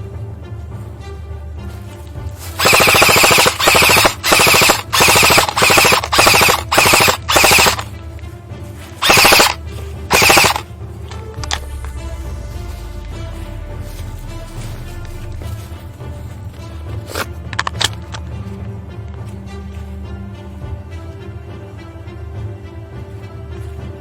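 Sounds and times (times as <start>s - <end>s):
background music: 0.0s - 24.0s
airsoft rifle full-auto bursts: 2.6s - 7.9s, 9.0s - 10.6s.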